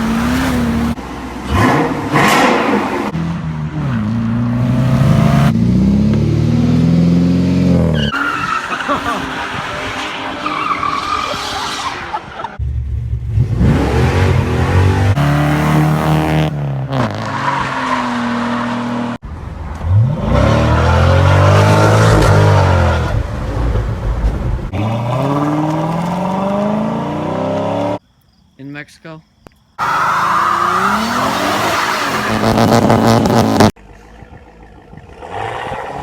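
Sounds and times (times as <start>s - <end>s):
car engine revving hard: 0.0s - 8.0s, 13.4s - 17.4s
tyres squealing: 8.0s - 12.6s.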